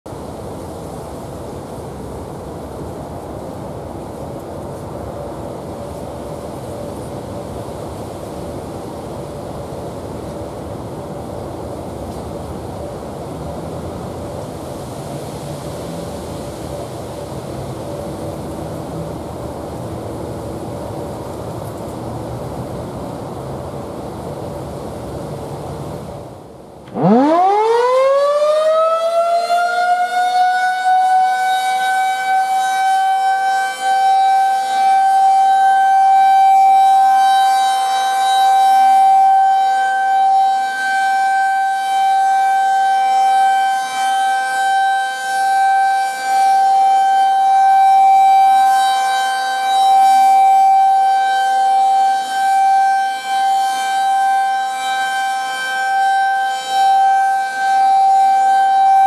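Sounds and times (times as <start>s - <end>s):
rotating warning siren wailing: 26.9s - 59.0s.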